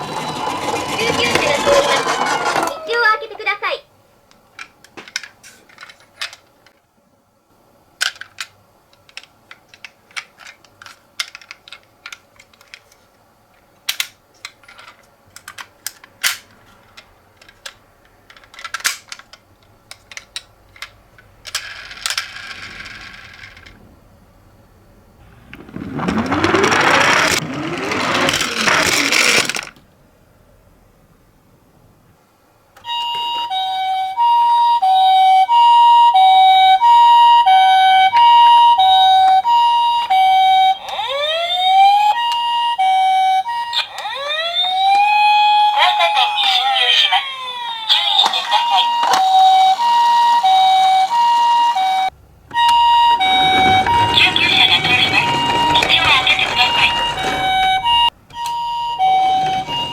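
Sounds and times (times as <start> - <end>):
toy two-tone siren: 0.0 - 3.0, 25.6 - 29.4, 32.8 - 59.9.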